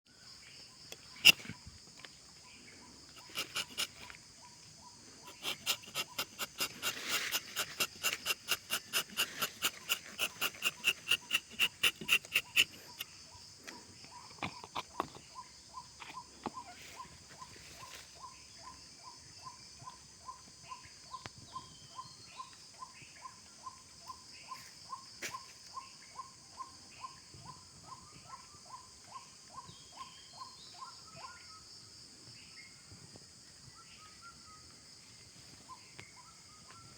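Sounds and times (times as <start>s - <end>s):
insects buzzing: 0.1s - 27.6s
sharp repeated calls: 5.3s - 13.0s.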